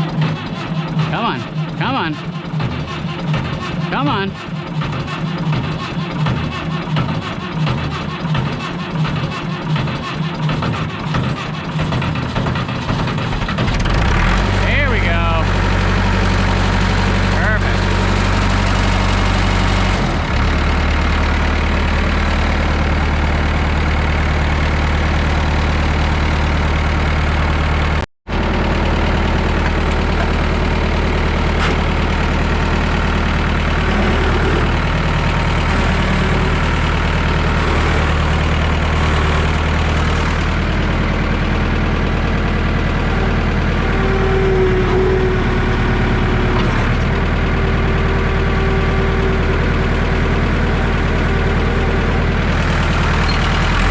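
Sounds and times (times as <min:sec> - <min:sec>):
tractor engine idling: 0:00.0 - 0:53.9.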